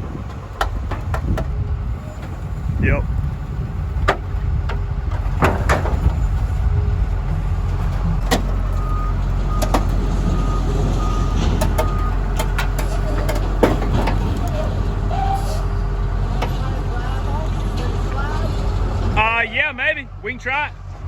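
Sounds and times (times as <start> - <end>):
heavy diesel machine rumbling: 0.0 - 21.0
metal clanks: 4.1 - 6.3, 11.2 - 15.7
backup alarm beeping: 8.5 - 12.3.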